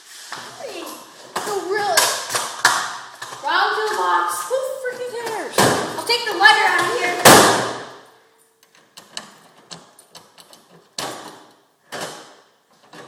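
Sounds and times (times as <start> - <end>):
toolbox bang: 6.9 - 8.0
tools clicking and rattling: 8.7 - 11.4.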